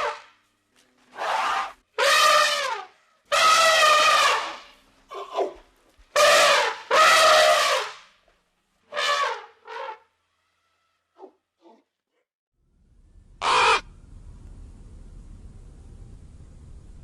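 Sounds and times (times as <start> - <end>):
animal calling drawn-out cries: 13.4 - 13.9.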